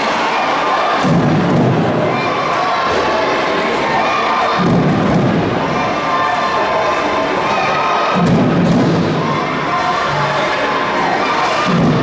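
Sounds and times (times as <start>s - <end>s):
crowd cheering and shouting: 0.0s - 12.0s
low thuds: 1.0s - 2.2s, 4.6s - 5.8s, 8.2s - 9.5s.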